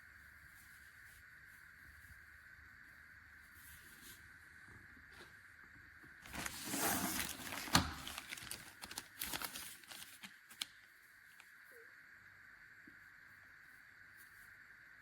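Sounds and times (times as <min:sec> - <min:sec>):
rustling and crinkling: 0:06.2 - 0:11.6.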